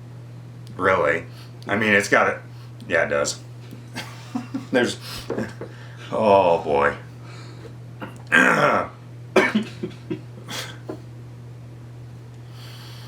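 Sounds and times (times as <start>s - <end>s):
low steady hum: 0.0s - 13.0s
man clearing throat: 8.0s - 11.0s.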